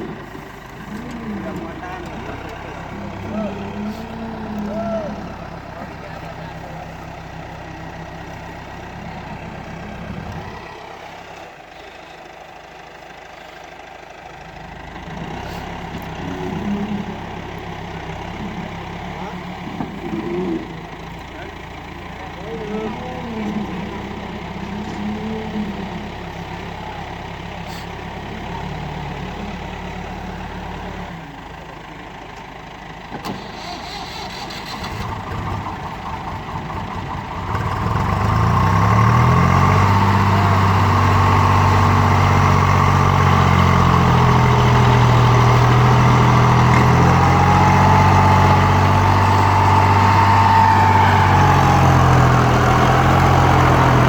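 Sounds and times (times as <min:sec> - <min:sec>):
diesel engine revving: 0:00.0 - 0:54.0.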